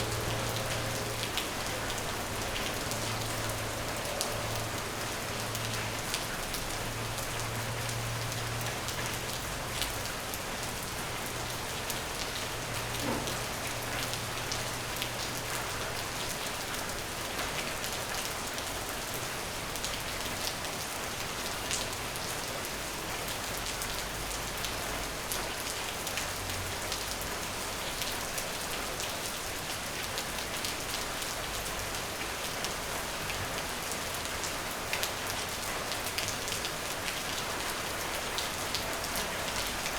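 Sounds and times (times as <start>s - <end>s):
rain falling: 0.0s - 39.9s.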